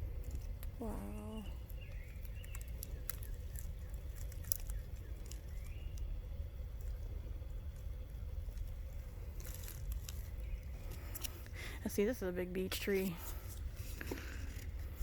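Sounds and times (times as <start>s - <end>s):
low microphone rumble: 0.0s - 15.0s
faint bird chirps: 0.8s - 6.5s, 10.2s - 11.2s.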